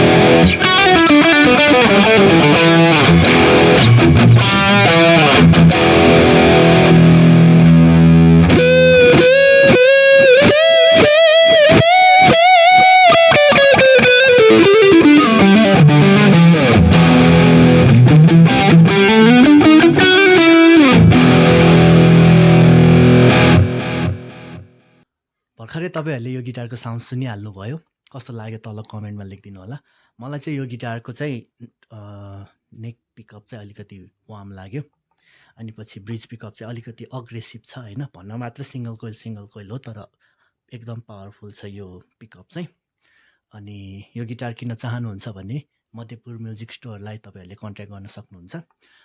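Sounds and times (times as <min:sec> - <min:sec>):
electric guitar playing: 0:00.0 - 0:24.9.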